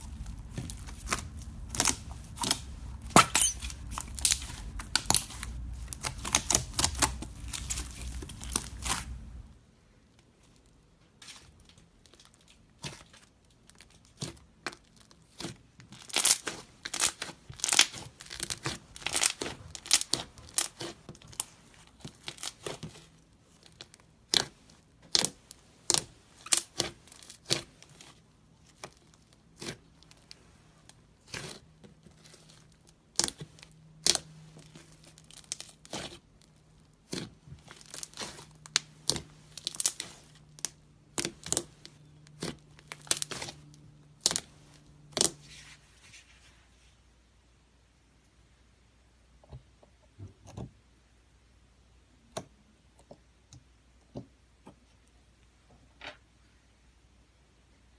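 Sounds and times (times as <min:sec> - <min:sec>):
slime squishing with crackling pops: 0:00.0 - 0:09.6, 0:11.3 - 0:45.4.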